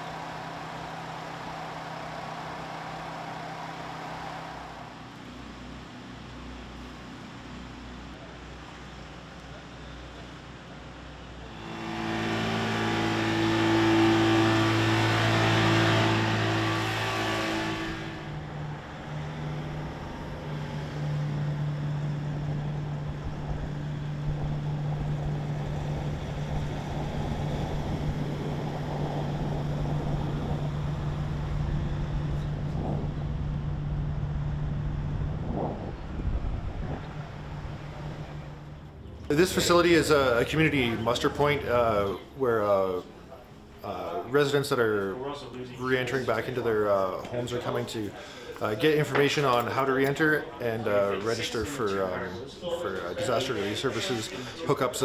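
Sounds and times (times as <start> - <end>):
vehicle engine running: 0.0 - 43.9.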